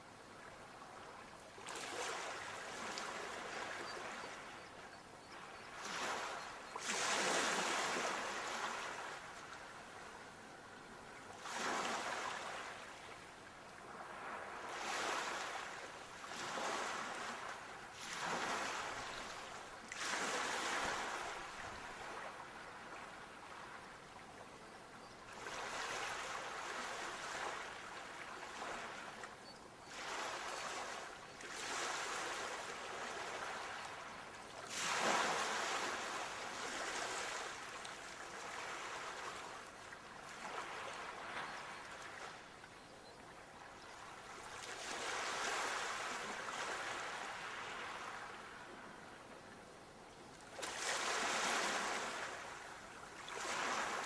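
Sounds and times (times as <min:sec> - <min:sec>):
sea waves washing onto shore: 0:30.0 - 0:39.7.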